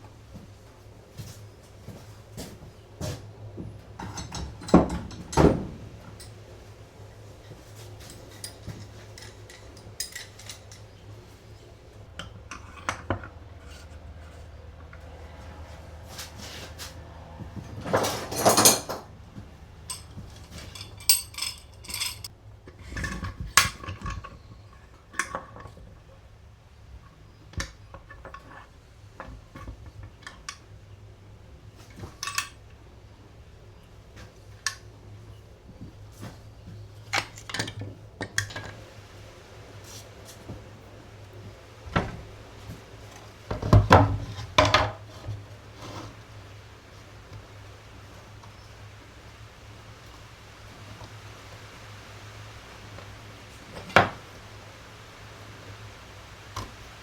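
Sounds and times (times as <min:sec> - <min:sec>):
small metal parts clinking: 0:08.0 - 0:10.9, 0:19.9 - 0:22.3.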